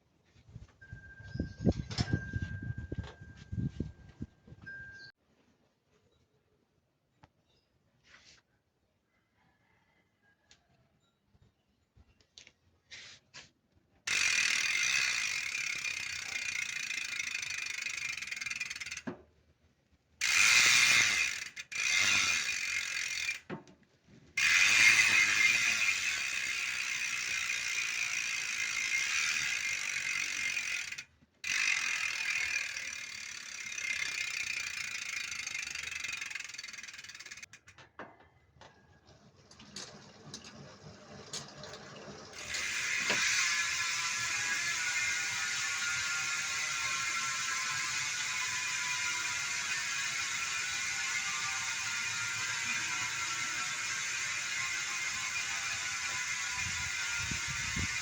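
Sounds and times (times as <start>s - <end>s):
bicycle freehub ratcheting: 14.1s - 19.2s, 20.2s - 23.6s, 24.4s - 37.8s, 39.7s - 58.0s.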